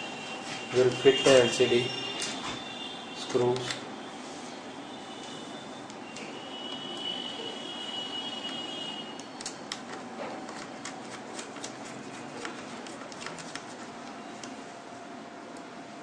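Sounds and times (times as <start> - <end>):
faint high whine: 0.0 - 9.4.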